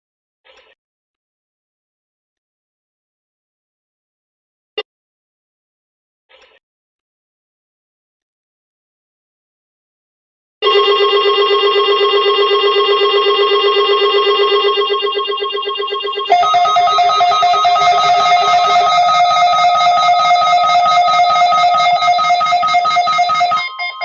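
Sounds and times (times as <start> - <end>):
pulsing buzzy electronic alarm: 10.6 - 24.0
steady raspy alarm tone: 10.6 - 24.0.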